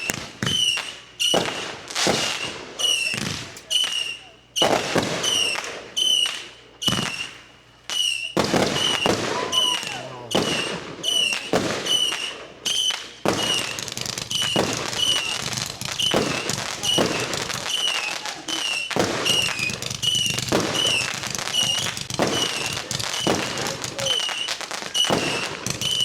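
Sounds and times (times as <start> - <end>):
fireworks bangs: 0.0 - 26.0
fireworks crackling: 0.0 - 26.0.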